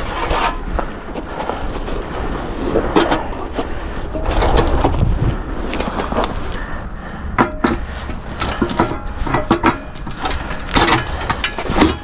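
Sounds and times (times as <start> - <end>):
rustling: 0.0 - 7.1.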